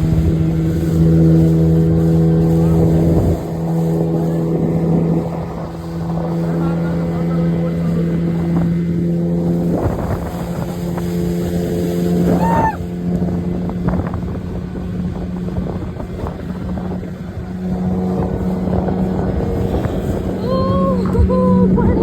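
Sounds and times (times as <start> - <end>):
motorboat engine droning: 0.0 - 22.0
water rushing past: 0.0 - 22.0
wind rushing: 8.2 - 22.0.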